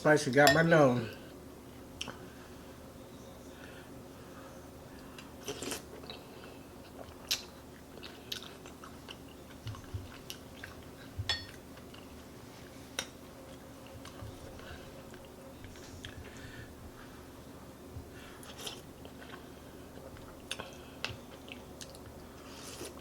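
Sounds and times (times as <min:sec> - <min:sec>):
faint steady hum: 0:00.0 - 0:23.0
chewing and lip-smacking: 0:05.2 - 0:12.3, 0:18.4 - 0:23.0.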